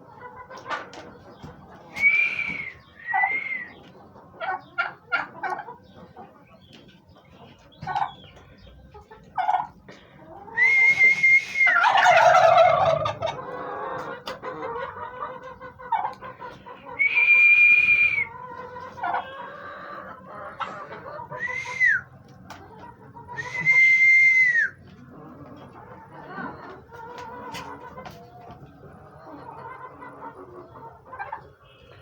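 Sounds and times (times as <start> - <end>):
turkey gobbling: 0.1 - 32.0
turkeys whistling calls: 0.6 - 5.7, 10.4 - 15.0, 15.9 - 25.0
short low turkey calls: 10.7 - 13.4.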